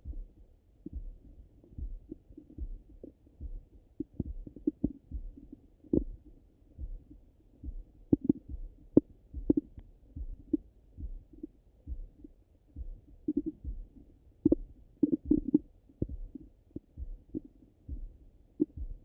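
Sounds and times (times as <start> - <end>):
low heartbeat-like thud: 0.0 - 19.0
muffled stomach gurgles and pops: 8.1 - 9.8, 13.2 - 18.0.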